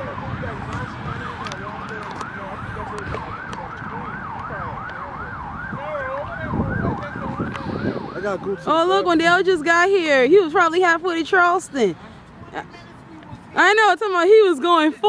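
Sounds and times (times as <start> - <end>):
lower wavering siren: 0.0 - 11.6
police siren yelping: 0.0 - 11.9
low road rumble: 0.0 - 15.0.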